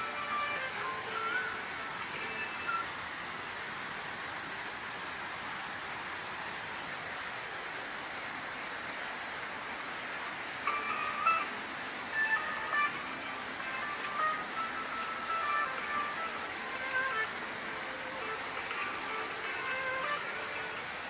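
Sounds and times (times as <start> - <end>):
steady even hiss: 0.0 - 4.4, 9.4 - 21.0.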